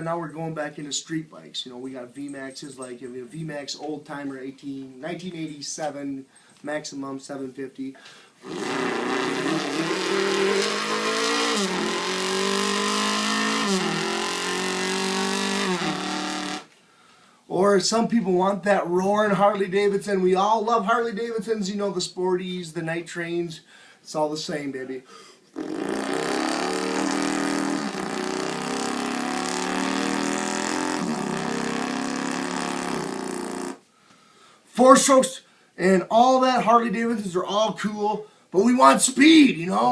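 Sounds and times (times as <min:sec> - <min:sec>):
man imitating motorcycle accelerating: 0:08.4 - 0:16.7, 0:25.6 - 0:33.8.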